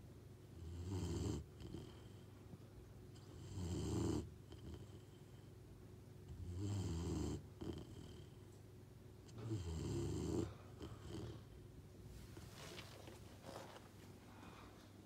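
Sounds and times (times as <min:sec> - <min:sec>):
dog snoring: 0:00.5 - 0:02.3, 0:03.1 - 0:05.5, 0:06.3 - 0:08.4, 0:09.2 - 0:11.7.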